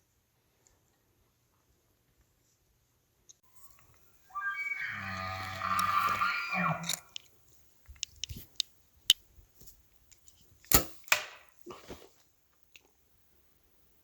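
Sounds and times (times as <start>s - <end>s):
elk bugling: 3.5s - 7.2s
small clicks: 4.8s - 9.2s.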